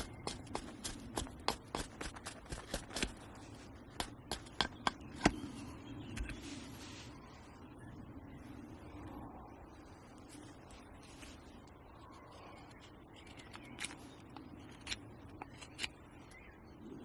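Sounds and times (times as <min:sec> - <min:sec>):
sharp irregular clicks and knocks: 0:04.0 - 0:05.4.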